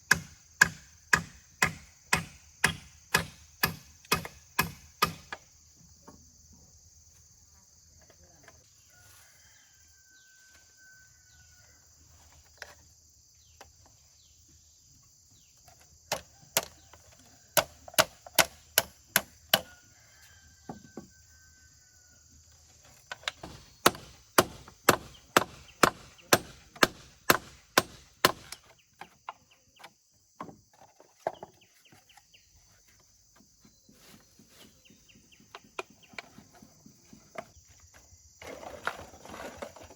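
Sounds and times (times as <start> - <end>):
sharp chopping strikes: 0.1 - 5.4, 23.4 - 28.6
rooster crowing: 8.8 - 11.9, 19.6 - 22.4.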